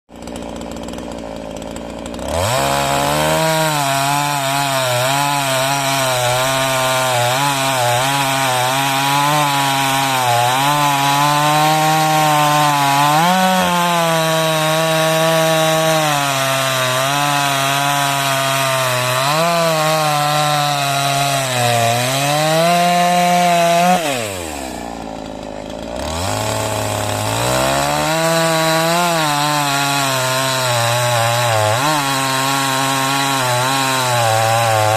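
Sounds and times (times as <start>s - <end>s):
chainsaw cutting wood: 0.1s - 34.9s.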